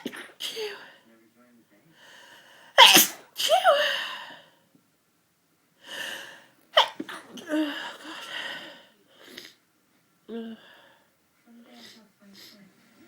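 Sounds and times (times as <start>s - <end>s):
person sneezing: 0.0s - 0.9s, 2.8s - 4.1s, 6.8s - 8.4s
gasping breath: 7.5s - 9.6s.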